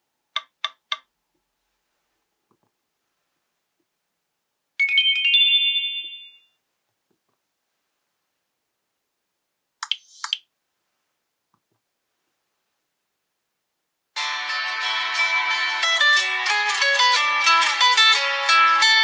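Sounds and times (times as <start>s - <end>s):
bright phone chime: 4.8s - 6.6s.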